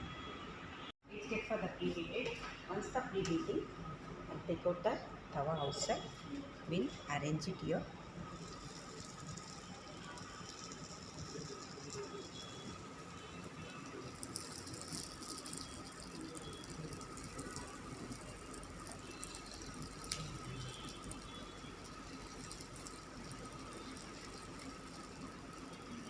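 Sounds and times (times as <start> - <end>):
faint steady hum: 0.0 - 26.0
small clicks and rustles: 8.2 - 26.0.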